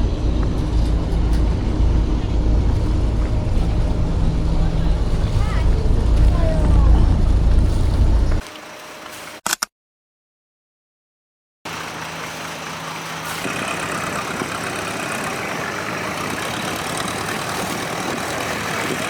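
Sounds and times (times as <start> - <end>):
rushing noise: 0.0 - 8.8
boat engine running: 0.0 - 9.4, 11.7 - 19.0.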